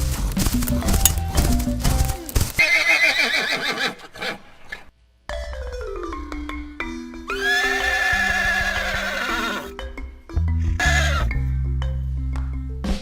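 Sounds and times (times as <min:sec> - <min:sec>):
xylophone notes over bass: 0:00.6 - 0:02.2, 0:05.3 - 0:07.4, 0:09.6 - 0:12.9
horse whinnying: 0:02.2 - 0:04.9, 0:07.3 - 0:09.8, 0:10.8 - 0:11.4.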